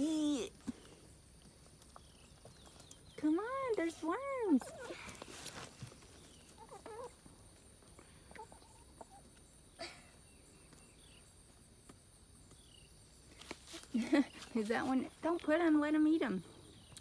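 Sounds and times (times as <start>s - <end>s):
chickens clucking: 0.6s - 11.0s.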